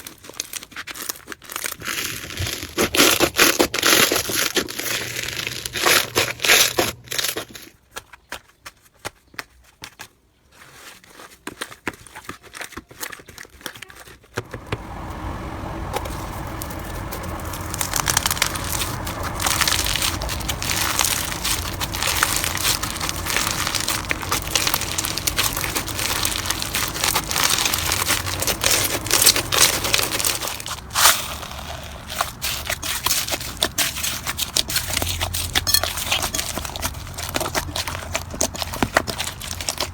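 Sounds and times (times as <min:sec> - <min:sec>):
crackling and crunching pops: 0:15.9 - 0:39.9
slime squeezed by hands: 0:17.0 - 0:39.9.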